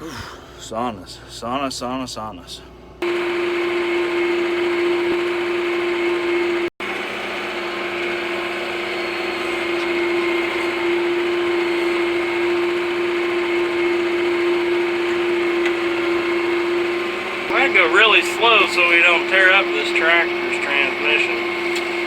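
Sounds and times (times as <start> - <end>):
steady mechanical whine: 3.0 - 22.0
tractor engine hum: 3.0 - 22.0.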